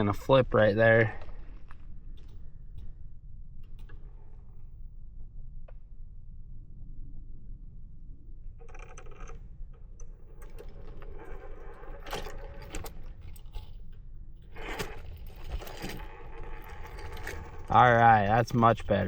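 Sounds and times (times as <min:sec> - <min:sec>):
electric motor and gears whirring: 0:08.6 - 0:19.0.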